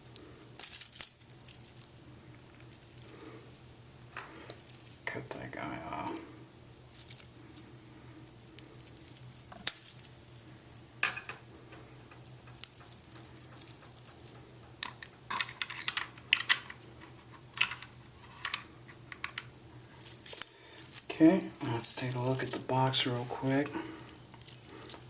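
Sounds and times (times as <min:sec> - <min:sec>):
faint low hum: 0:00.0 - 0:25.0
hands handling watch bracelet: 0:12.0 - 0:22.6.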